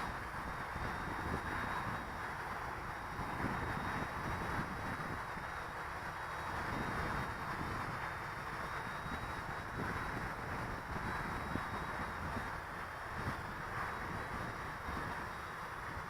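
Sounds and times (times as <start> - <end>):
wind buffeting microphone: 0.0 - 16.0.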